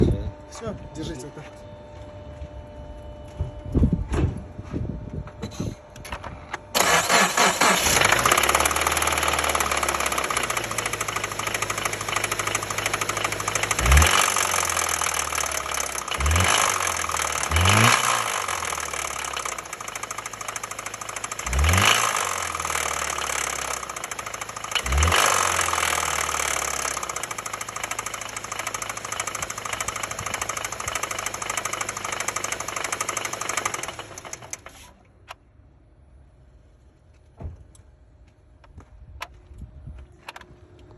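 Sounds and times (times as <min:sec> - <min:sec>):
car engine starting and revving: 0:06.8 - 0:34.7
engine knock while idling: 0:08.1 - 0:34.6.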